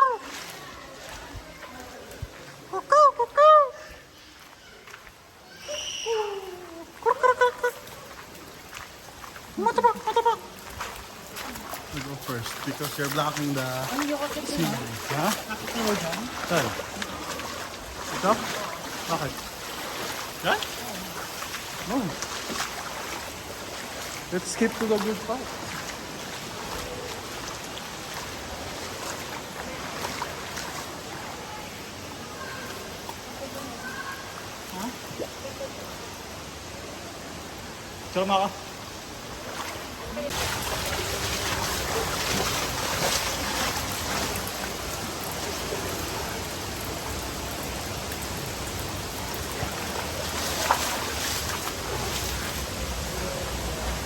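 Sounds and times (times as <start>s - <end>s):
waterfall rushing: 6.4s - 34.6s, 36.0s - 54.0s.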